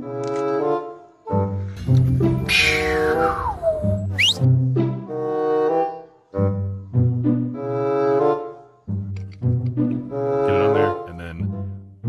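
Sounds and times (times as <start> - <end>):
playful music with bass and brass: 0.0 - 3.2, 3.9 - 12.0
quick rising swoop: 2.4 - 4.5
sliding whistle-like tone: 2.4 - 4.5.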